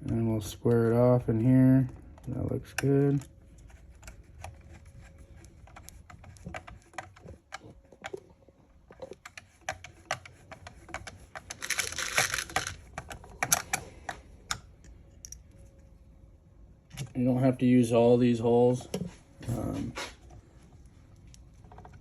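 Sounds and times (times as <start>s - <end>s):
plastic parts scraping: 1.6s - 14.3s
plastic parts clicking: 9.0s - 15.4s.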